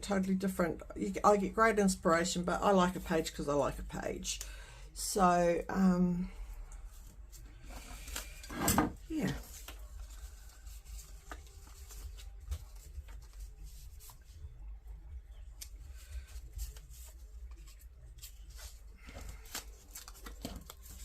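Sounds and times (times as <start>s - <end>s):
low steady hum: 0.0s - 21.0s
paper rustling: 9.2s - 14.6s, 15.4s - 21.0s.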